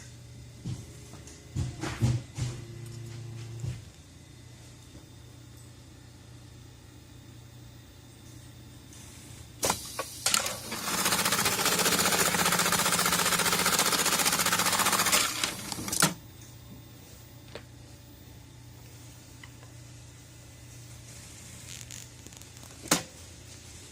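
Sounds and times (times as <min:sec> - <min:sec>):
sewing machine clacking: 0:10.4 - 0:16.2
sewing machine stitching: 0:10.4 - 0:16.2.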